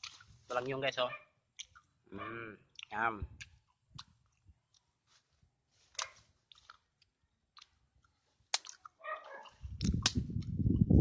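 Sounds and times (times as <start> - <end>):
chewing with wet crunches: 0.0 - 0.6, 1.4 - 10.8
low rumble on microphone: 9.6 - 11.0.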